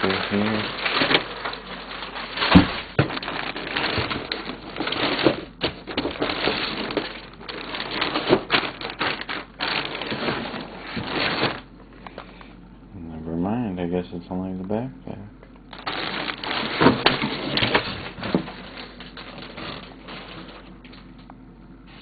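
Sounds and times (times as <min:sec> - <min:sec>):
paper crumpling and rustling: 0:00.0 - 0:11.7, 0:15.7 - 0:21.1.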